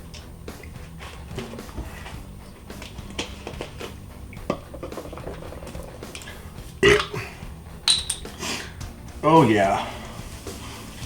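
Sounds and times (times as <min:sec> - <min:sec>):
plastic bottle clicks and knocks: 0:02.8 - 0:06.3
person swallowing: 0:04.4 - 0:07.6.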